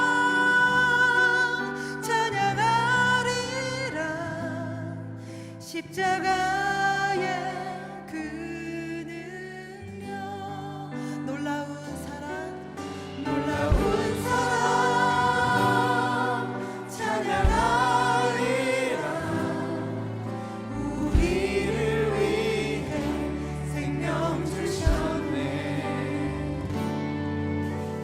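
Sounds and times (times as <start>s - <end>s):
worship team singing: 0.0s - 4.9s, 6.0s - 9.1s, 12.3s - 28.0s
keyboard and bass band: 12.2s - 28.0s.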